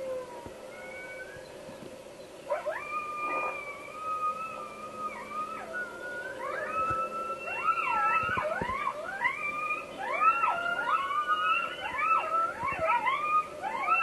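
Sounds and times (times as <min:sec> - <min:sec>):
coyotes howling and yipping: 0:00.0 - 0:14.0.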